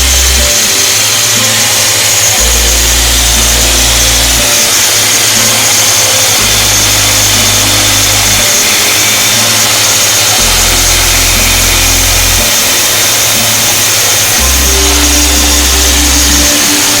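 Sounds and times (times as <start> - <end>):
low bass note: 0.0 - 0.5, 2.4 - 4.5, 6.3 - 8.6, 10.4 - 12.6, 14.3 - 16.6
hissy background music: 0.0 - 17.0.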